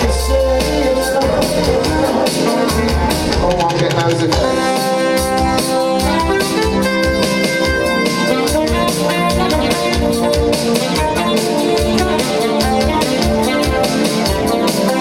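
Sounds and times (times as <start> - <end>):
steady drum beat: 0.0 - 15.0.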